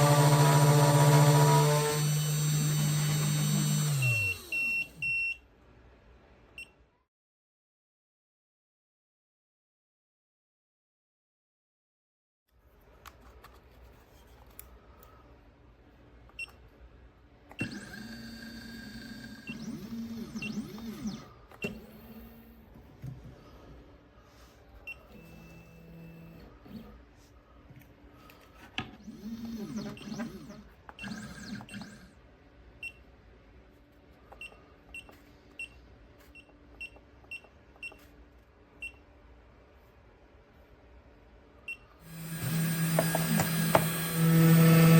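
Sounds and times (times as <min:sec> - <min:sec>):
stepper motor whine: 0:00.0 - 0:05.0, 0:17.6 - 0:22.4, 0:42.0 - 0:44.9
stepper motor chirps: 0:17.6 - 0:22.2.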